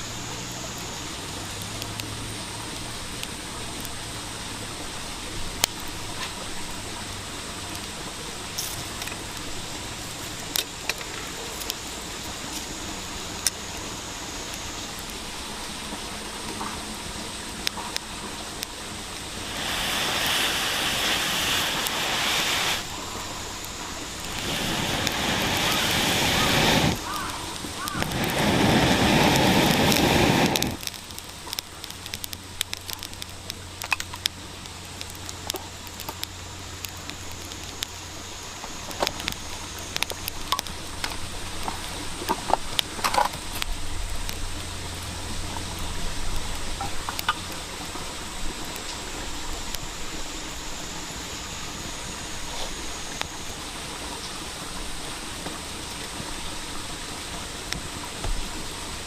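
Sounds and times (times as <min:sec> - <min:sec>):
campfire crackling and popping: 0:00.0 - 0:59.0
loud rushing noise: 0:24.1 - 0:30.8.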